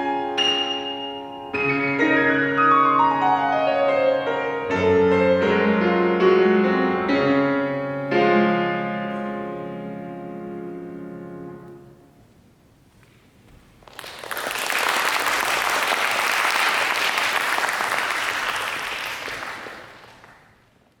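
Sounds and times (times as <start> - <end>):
piano chord ringing: 0.0 - 12.1
audience applauding: 13.8 - 20.8.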